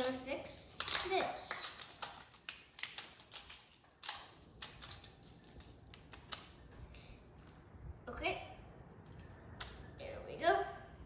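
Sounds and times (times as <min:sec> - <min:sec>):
plastic tiles clicking together: 0:00.8 - 0:06.5.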